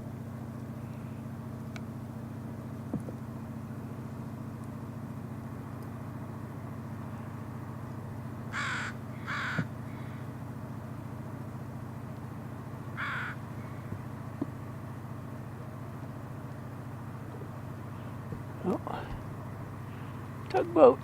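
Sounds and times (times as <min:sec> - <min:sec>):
steady low hum: 0:00.0 - 0:21.0
crow cawing: 0:08.5 - 0:10.1, 0:13.0 - 0:13.4.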